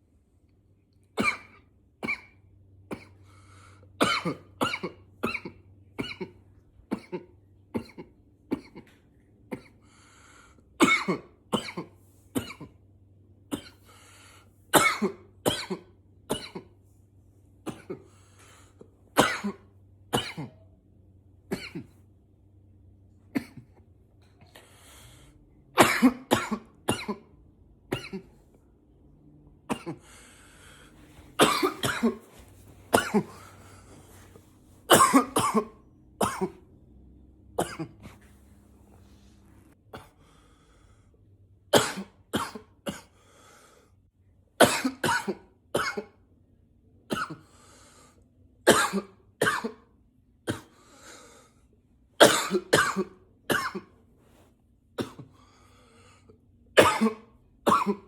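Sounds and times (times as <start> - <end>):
faint breaths: 3.1 - 4.0, 9.7 - 10.8, 13.8 - 14.7, 18.0 - 19.2, 24.2 - 25.7, 30.0 - 31.4, 38.0 - 41.5, 43.1 - 44.1, 47.4 - 48.4, 50.7 - 51.9, 55.2 - 56.6
man coughing: 4.0 - 9.8, 10.8 - 12.8, 14.8 - 16.7, 19.2 - 20.6, 25.8 - 27.3, 27.9 - 28.4, 29.7 - 30.2, 31.4 - 33.9, 34.9 - 36.6, 37.6 - 38.2, 41.7 - 43.1, 44.6 - 46.2, 48.7 - 49.8, 52.2 - 53.9, 55.0 - 55.4, 56.8 - 58.0.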